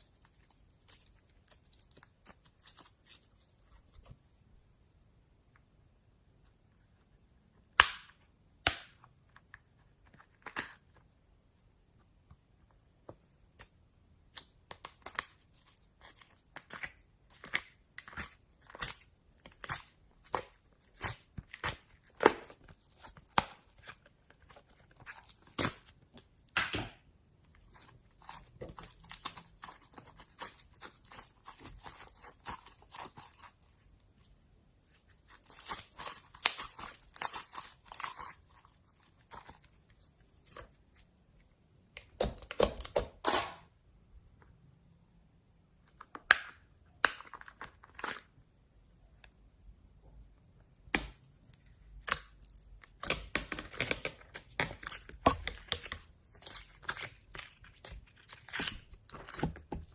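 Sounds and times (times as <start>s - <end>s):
slime popping and crackling: 14.3s - 26.8s, 35.2s - 40.1s, 50.9s - 59.9s.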